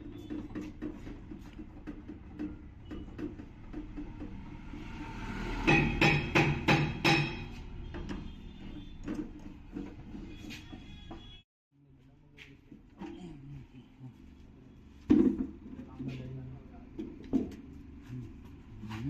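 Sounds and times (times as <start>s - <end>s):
hammer striking metal: 4.8s - 7.9s.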